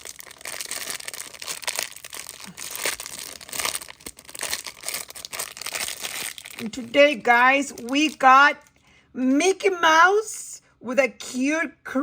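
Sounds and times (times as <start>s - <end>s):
packaging crinkling and tearing: 0.0s - 8.7s.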